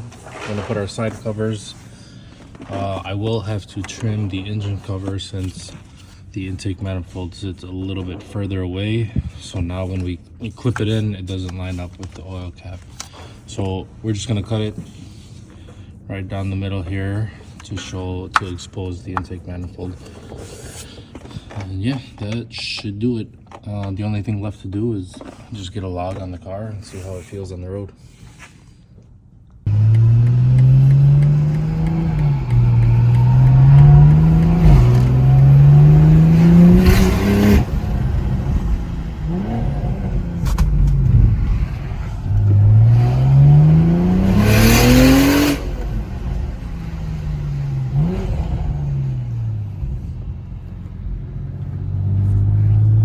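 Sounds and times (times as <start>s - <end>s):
car engine accelerating: 29.7s - 53.0s
turbo whoosh: 30.6s - 50.0s.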